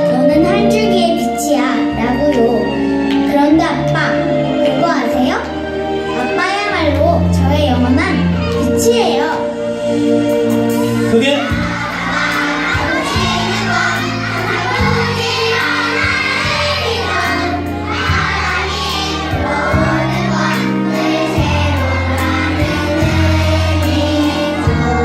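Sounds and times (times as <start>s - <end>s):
children singing together: 10.6s - 25.0s.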